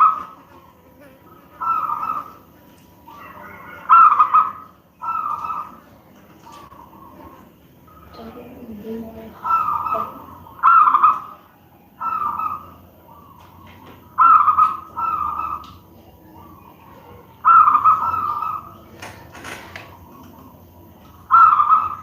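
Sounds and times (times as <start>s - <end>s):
dove cooing: 0.0s - 22.0s.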